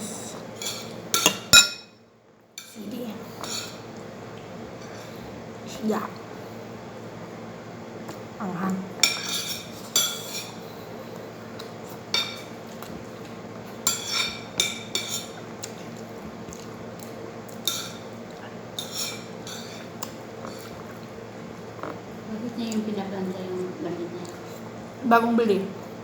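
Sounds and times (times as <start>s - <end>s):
cutlery clinking on a plate: 0.6s - 2.0s, 9.0s - 10.6s, 12.1s - 12.5s, 13.8s - 15.4s, 17.7s - 18.0s, 18.8s - 19.8s.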